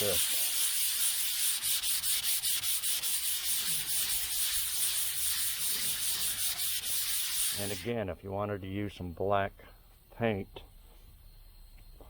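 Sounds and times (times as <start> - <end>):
sandpaper rubbing by hand: 0.0 - 7.9.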